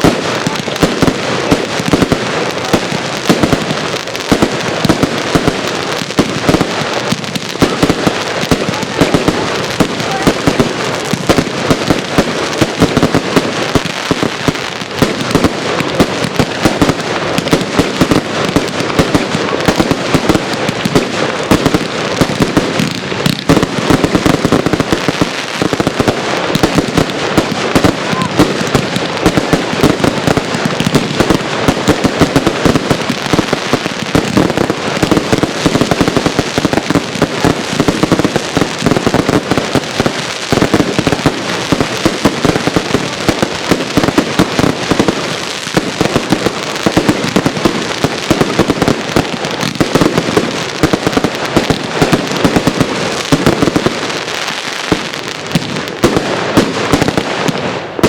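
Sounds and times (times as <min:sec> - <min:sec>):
firework cake shots and crackling: 0:00.0 - 0:58.0.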